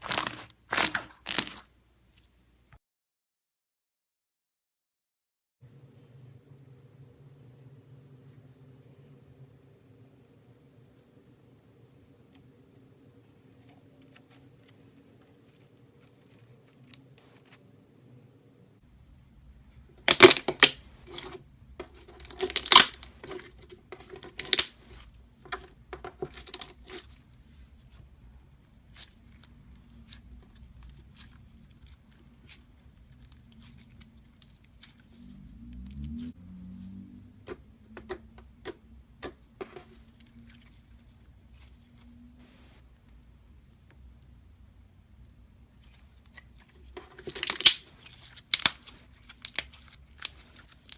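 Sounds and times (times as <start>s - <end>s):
slime clicking and crackling: 0.0s - 1.6s, 20.0s - 27.2s, 45.8s - 50.9s
slime squeezed by hand: 0.0s - 1.7s.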